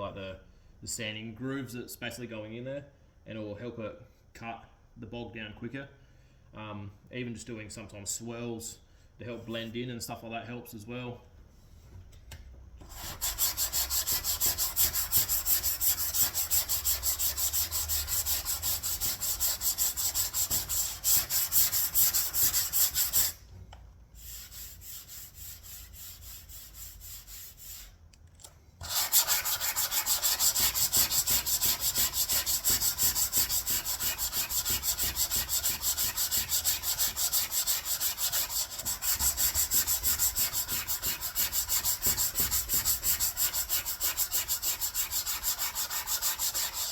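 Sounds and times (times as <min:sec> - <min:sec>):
sandpaper strokes on a sanding block: 0:12.9 - 0:23.4, 0:24.2 - 0:27.9, 0:28.8 - 0:46.9.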